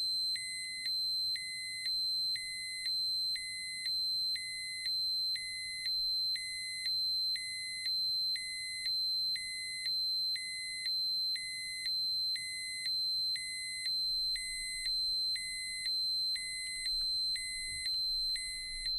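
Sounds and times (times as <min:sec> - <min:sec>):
lower alarm beep: 0:00.4 - 0:18.9.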